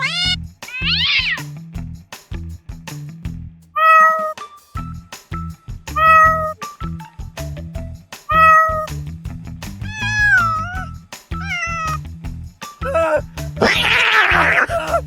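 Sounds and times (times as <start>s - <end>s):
cat meowing: 0.0s - 1.4s, 3.8s - 4.4s, 9.9s - 10.8s, 11.4s - 11.9s, 13.1s - 14.7s
background music with beat: 4.3s - 15.0s.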